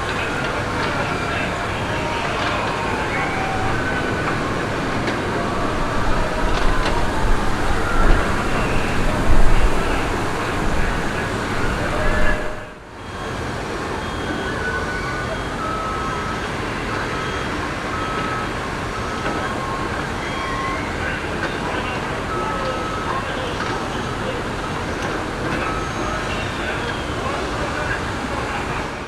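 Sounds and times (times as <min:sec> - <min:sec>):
wind rumble on microphone: 0:00.0 - 0:12.8
crowd talking: 0:00.0 - 0:29.0.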